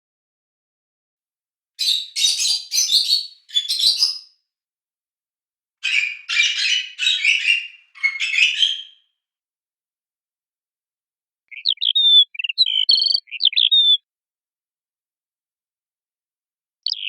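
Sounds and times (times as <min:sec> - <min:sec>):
songbird chattering and whistling: 0:01.8 - 0:04.3, 0:05.8 - 0:09.0, 0:11.5 - 0:14.0.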